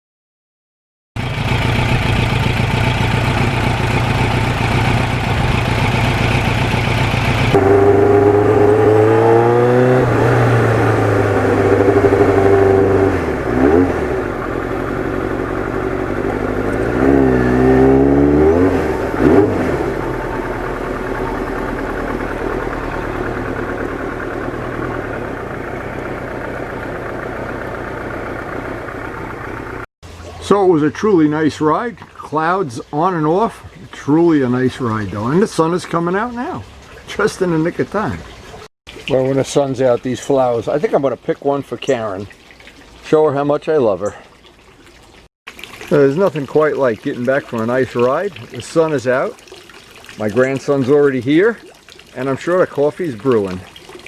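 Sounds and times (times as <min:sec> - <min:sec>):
motorcycle engine revving: 0:01.2 - 0:29.9.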